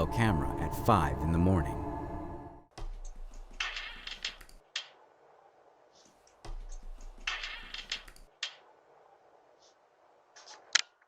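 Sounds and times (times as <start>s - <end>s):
low hum: 0.0s - 2.7s.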